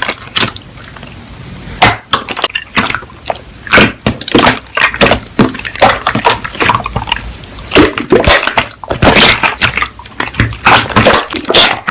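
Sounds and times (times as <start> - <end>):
slime squelching: 0.0 - 11.9
slime crackling and popping: 3.7 - 11.9.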